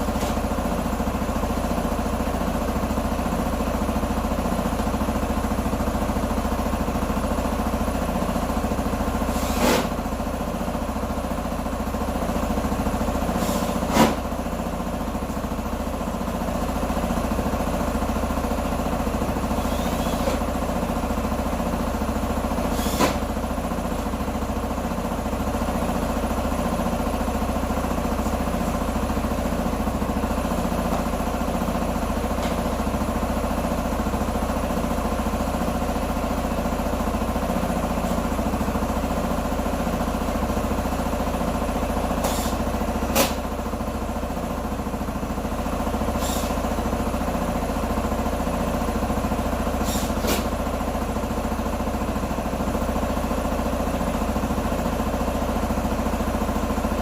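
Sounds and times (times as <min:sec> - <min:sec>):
motorcycle engine idling: 0:00.0 - 0:57.0.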